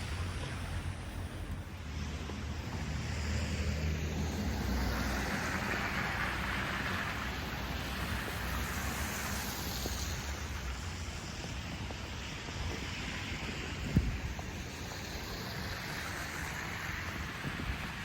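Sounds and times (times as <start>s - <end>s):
wind buffeting microphone: 4.1s - 18.0s.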